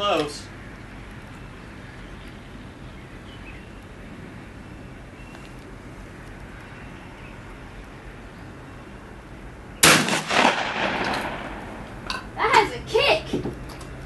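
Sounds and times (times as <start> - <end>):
shotgun shot with echoes: 9.8 - 11.8.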